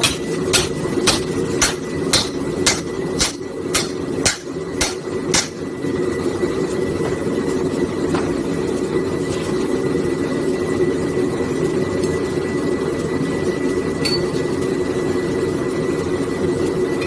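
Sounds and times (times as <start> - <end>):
hammer striking chisel on metal: 0.0 - 5.7
gas forge burners roaring: 0.0 - 17.0.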